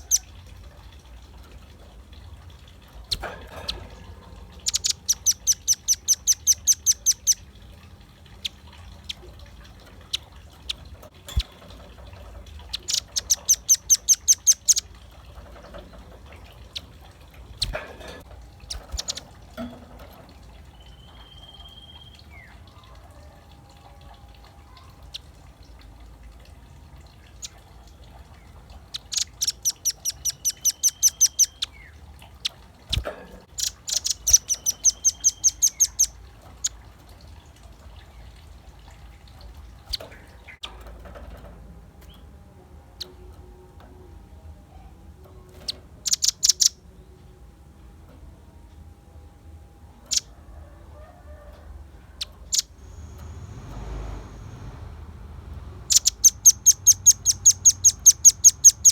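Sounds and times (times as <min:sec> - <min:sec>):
bird singing fast trills: 0:00.0 - 0:00.3, 0:04.6 - 0:07.6, 0:12.7 - 0:15.1, 0:18.7 - 0:19.3, 0:20.7 - 0:22.6, 0:28.9 - 0:32.0, 0:32.9 - 0:36.2, 0:46.0 - 0:46.8, 0:55.9 - 0:58.9.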